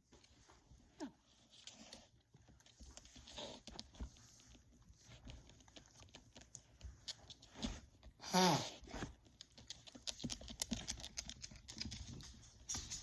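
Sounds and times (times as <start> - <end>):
person sneezing: 8.2 - 8.8.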